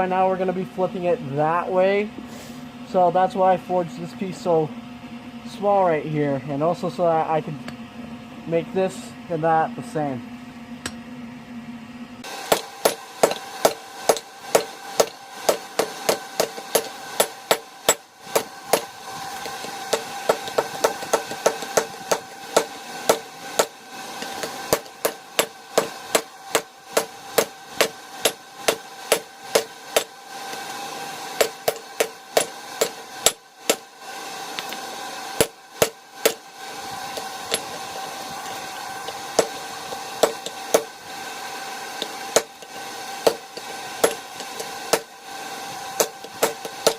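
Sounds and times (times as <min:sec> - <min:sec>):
hammer striking steel on anvil: 0:12.5 - 0:30.1, 0:31.4 - 0:33.8, 0:37.1 - 0:37.8, 0:40.2 - 0:40.9, 0:42.0 - 0:45.1, 0:46.0 - 0:46.9.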